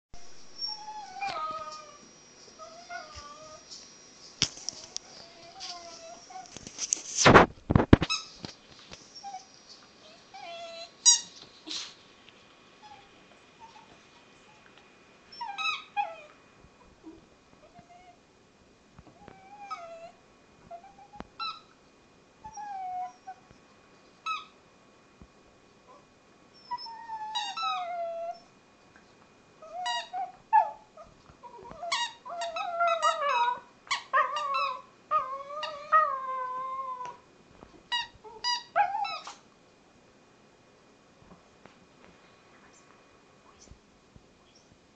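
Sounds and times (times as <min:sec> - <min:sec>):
dog whining and whimpering: 0:00.2 - 0:02.0, 0:02.6 - 0:03.7, 0:04.8 - 0:06.6, 0:09.2 - 0:11.9, 0:15.3 - 0:16.4, 0:17.0 - 0:18.2, 0:19.2 - 0:21.8, 0:22.4 - 0:23.4, 0:25.9 - 0:28.5, 0:29.6 - 0:37.2, 0:37.9 - 0:39.4
squeaky toy squeaks: 0:11.0 - 0:11.4, 0:27.3 - 0:27.8, 0:37.9 - 0:39.4.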